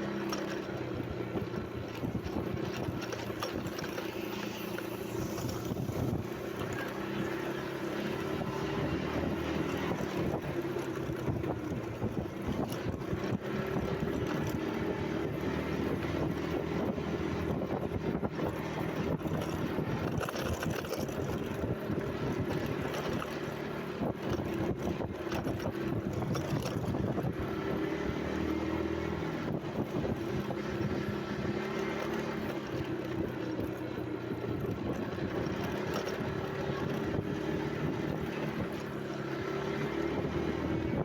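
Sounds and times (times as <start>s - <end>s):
engine running steadily: 0.0s - 41.0s
wind on microphone: 4.9s - 7.3s, 8.2s - 31.6s.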